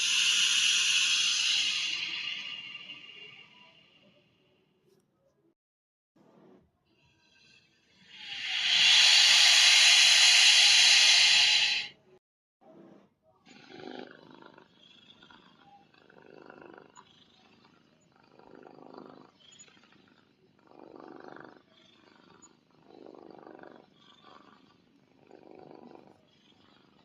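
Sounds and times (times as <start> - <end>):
low creature growl: 0.0 - 3.9.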